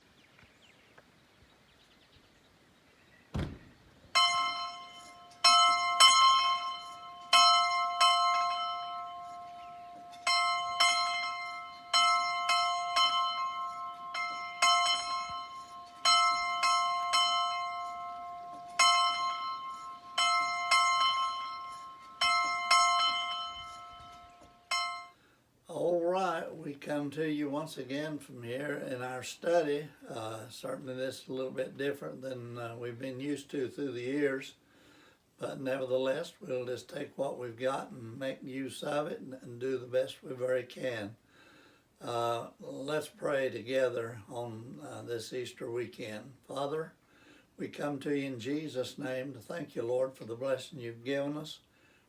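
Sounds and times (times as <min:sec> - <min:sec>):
low thump: 0:03.3 - 0:03.8
church bell tolling: 0:04.2 - 0:25.2.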